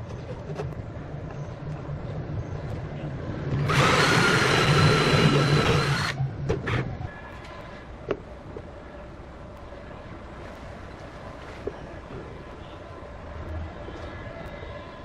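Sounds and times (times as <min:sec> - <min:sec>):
electric drill running: 0:03.7 - 0:06.2.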